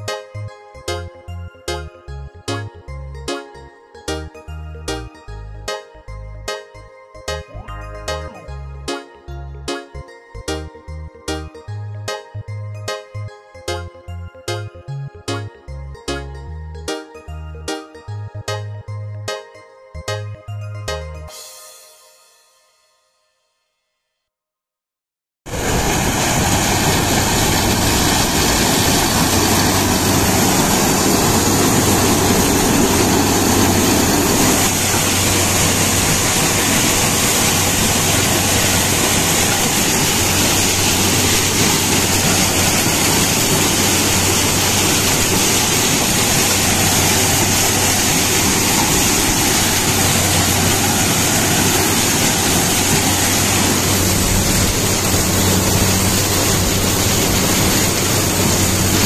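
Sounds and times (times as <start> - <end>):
harvester machine running: 25.5 - 59.0.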